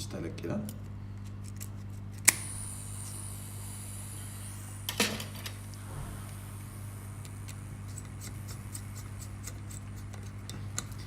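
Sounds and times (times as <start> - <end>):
low electrical hum: 0.0 - 11.0
hot air hissing: 2.2 - 11.0.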